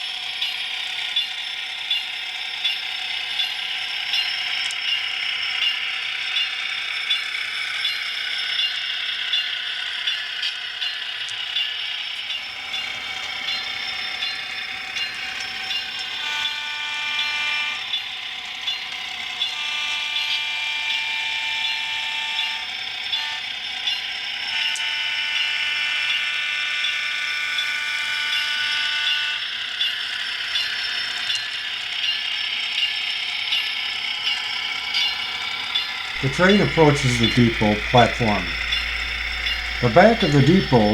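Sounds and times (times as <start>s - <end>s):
multi-tone train horn blasts: 16.2s - 17.8s, 36.2s - 40.9s.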